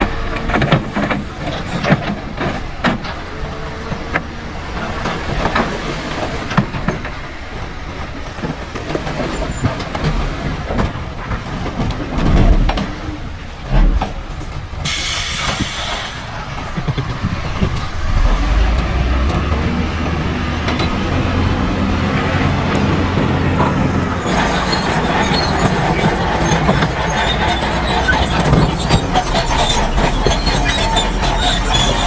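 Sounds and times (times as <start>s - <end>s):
diesel machinery running: 0.0s - 32.0s
air hiss: 14.8s - 16.5s.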